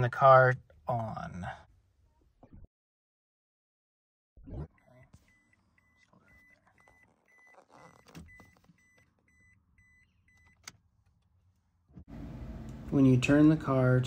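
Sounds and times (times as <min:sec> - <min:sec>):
car warning chime beeping: 0:04.8 - 0:10.7.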